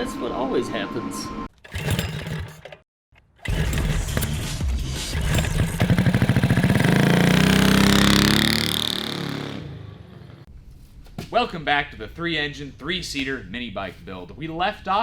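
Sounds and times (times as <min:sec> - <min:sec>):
engine revving: 0:01.7 - 0:02.8, 0:03.4 - 0:10.5.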